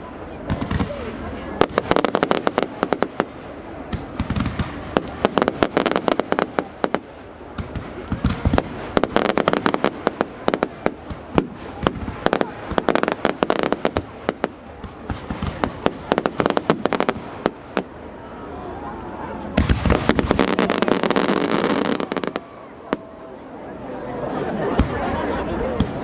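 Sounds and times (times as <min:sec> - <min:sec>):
fireworks crackling bangs: 0:00.0 - 0:18.0, 0:19.5 - 0:23.2
deep firework thuds: 0:00.4 - 0:01.0, 0:01.6 - 0:17.9, 0:19.6 - 0:22.4.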